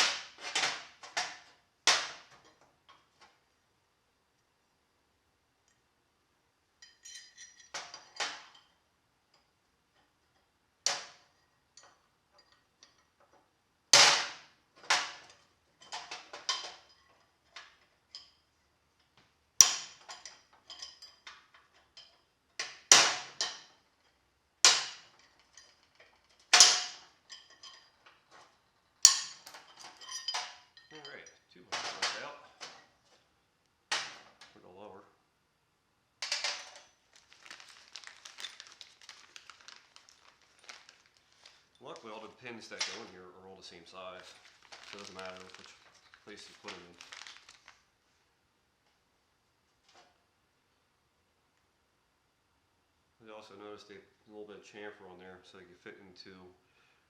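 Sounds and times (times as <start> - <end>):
small metal parts clinking: 6.8 - 8.8, 19.6 - 23.8, 24.7 - 32.3, 36.2 - 41.6, 44.3 - 47.7.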